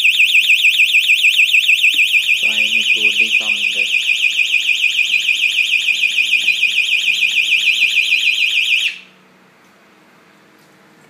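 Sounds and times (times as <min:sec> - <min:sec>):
warbling alarm siren: 0:00.0 - 0:09.2.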